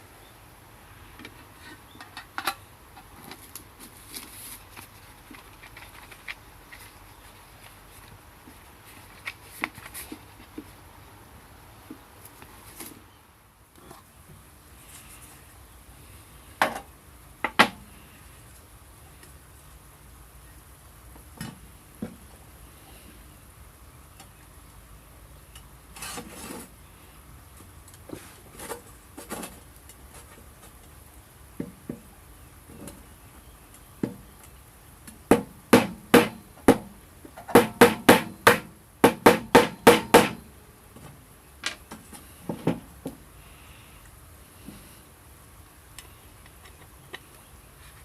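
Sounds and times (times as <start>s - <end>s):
sharp knocks: 37.5s - 40.4s.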